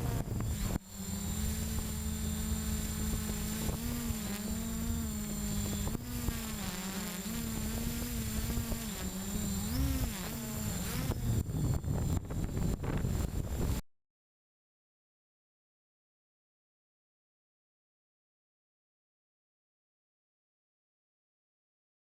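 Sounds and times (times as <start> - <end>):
drone motors humming: 0.0 - 13.8.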